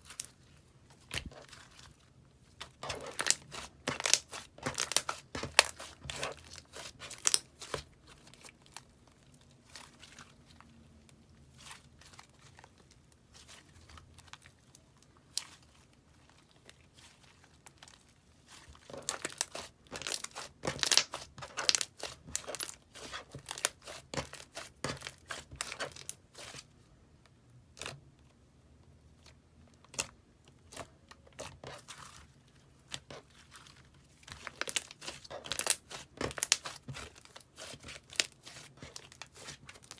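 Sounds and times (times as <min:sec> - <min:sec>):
slime squishing and popping: 0:02.6 - 0:07.9, 0:18.8 - 0:26.1.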